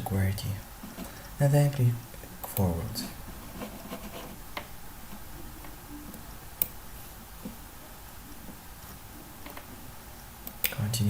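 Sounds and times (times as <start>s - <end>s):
low steady hiss: 0.0s - 11.0s
computer mouse clicks: 10.4s - 10.8s.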